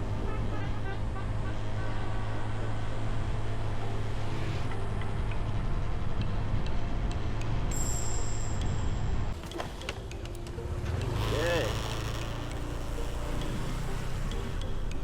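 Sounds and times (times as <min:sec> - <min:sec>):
motorcycle engine cruising: 0:00.0 - 0:15.0
road noise: 0:00.0 - 0:15.0.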